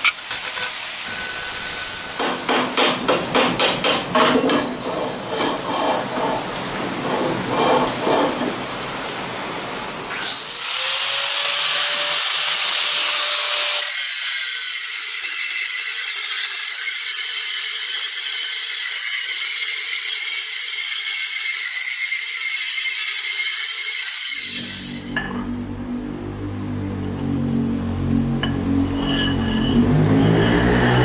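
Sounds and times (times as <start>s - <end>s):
electric power tool whining: 10.1s - 14.1s.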